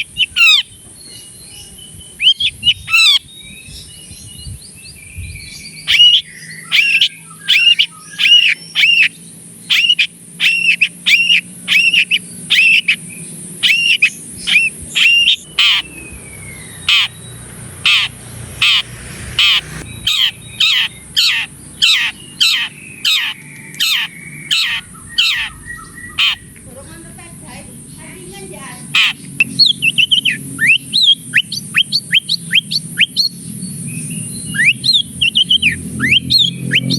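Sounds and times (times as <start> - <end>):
shrike singing harsh notes: 13.6 - 26.5.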